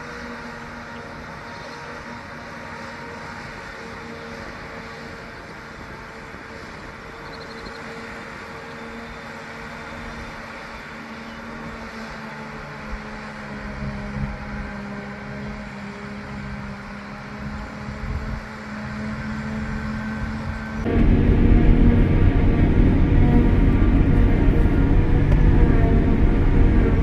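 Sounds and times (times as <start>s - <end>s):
engine humming: 18.5s - 27.0s.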